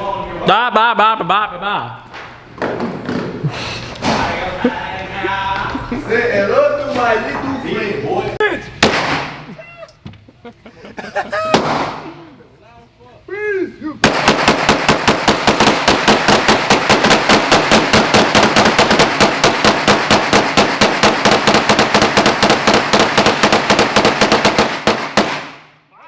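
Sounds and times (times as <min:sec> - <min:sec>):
rapid gunfire: 0:08.8 - 0:09.4, 0:11.5 - 0:12.0, 0:14.0 - 0:25.8.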